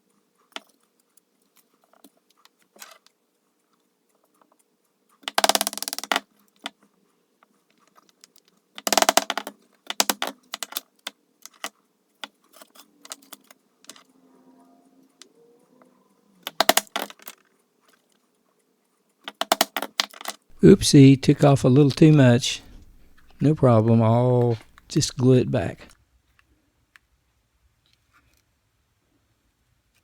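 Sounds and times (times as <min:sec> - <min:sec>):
clicks and knocks: 0:08.8 - 0:10.8, 0:16.4 - 0:17.4.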